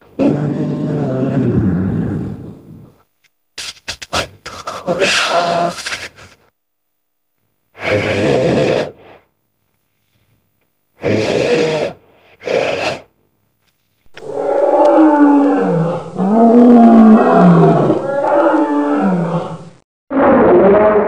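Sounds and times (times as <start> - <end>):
creature roars: 0.2 - 2.6, 7.8 - 9.0, 11.0 - 13.1, 14.2 - 21.0.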